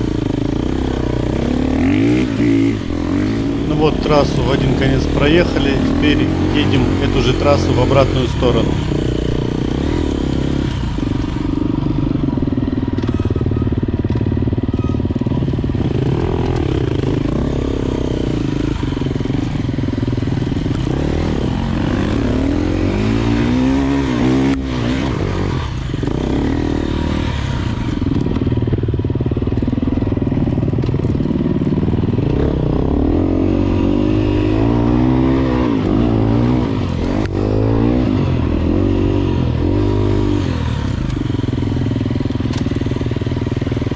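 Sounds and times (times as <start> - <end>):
dirt bike engine revving: 2.9 - 9.4.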